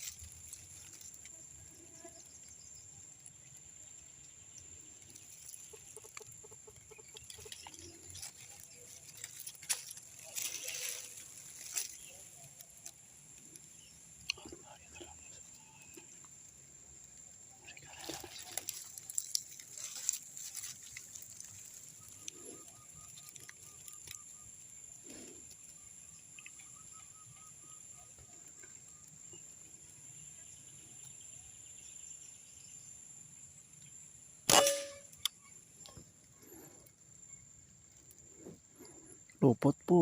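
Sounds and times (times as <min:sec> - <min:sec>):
high insect whine: 0:00.0 - 0:40.0
air rifle shot: 0:34.5 - 0:35.0
bird calling: 0:34.5 - 0:35.6.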